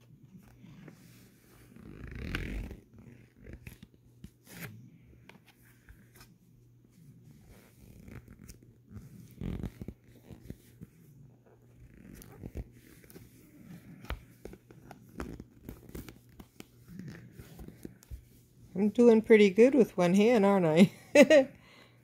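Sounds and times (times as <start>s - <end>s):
material crinkling and rustling: 7.0s - 18.8s.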